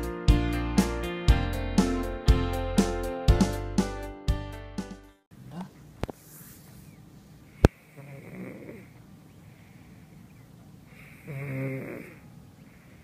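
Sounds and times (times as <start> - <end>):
cat snoring: 7.9 - 9.0, 11.0 - 12.3.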